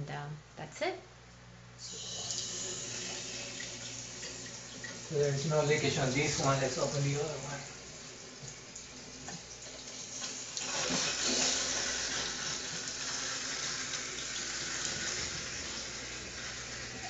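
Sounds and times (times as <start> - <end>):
faucet water running into sink: 1.8 - 17.0.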